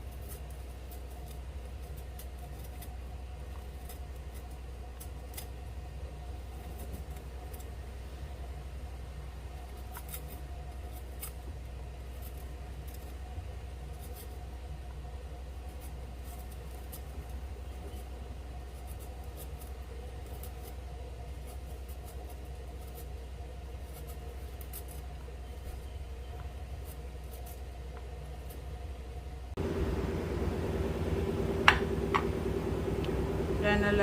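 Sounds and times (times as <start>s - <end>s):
hand peeling scraping and clicking: 0.0s - 5.6s, 9.6s - 13.2s, 13.9s - 14.4s, 18.7s - 23.2s, 23.8s - 28.7s
steady low hum: 0.0s - 34.0s.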